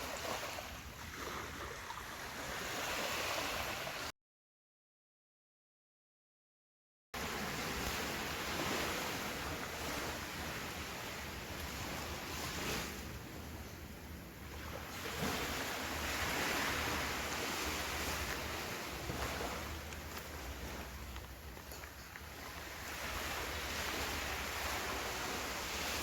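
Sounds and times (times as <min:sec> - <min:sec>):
ocean surf washing onto beach: 0:07.2 - 0:13.4, 0:14.5 - 0:26.0.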